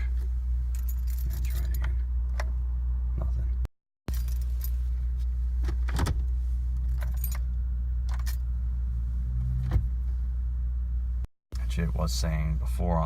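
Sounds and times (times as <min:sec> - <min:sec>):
keys jangling: 0:00.8 - 0:01.9, 0:04.1 - 0:04.8, 0:06.8 - 0:07.5.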